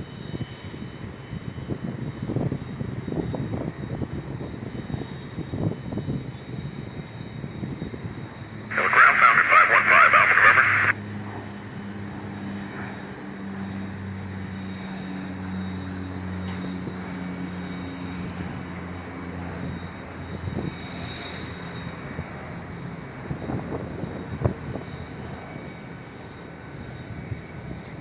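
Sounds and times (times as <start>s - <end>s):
jet engines droning: 5.2s - 28.0s
short crackles: 8.7s - 10.9s.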